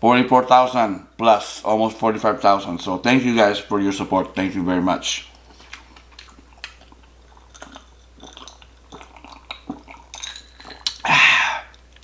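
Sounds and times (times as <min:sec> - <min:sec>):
chewing clicks: 0:05.3 - 0:11.0.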